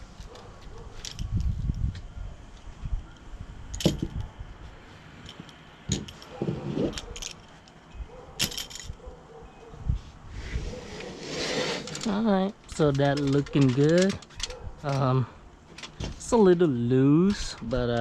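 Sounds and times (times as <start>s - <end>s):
tools knocking and clinking: 3.7s - 4.3s, 5.2s - 7.8s, 8.4s - 9.1s, 12.0s - 15.1s.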